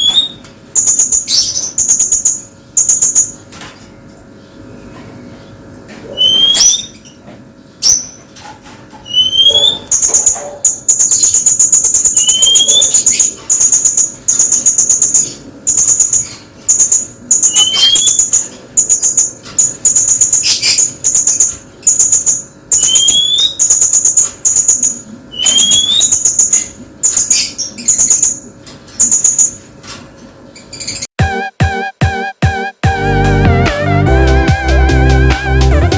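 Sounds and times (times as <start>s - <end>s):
parrot rattling trills: 7.8s - 28.4s.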